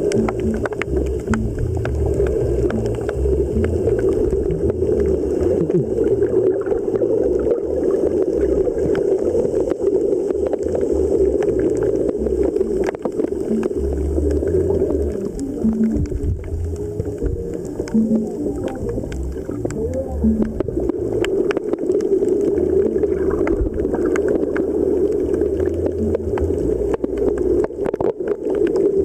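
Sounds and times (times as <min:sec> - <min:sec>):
ambient music: 0:00.0 - 0:05.7, 0:12.1 - 0:21.3, 0:25.3 - 0:27.2.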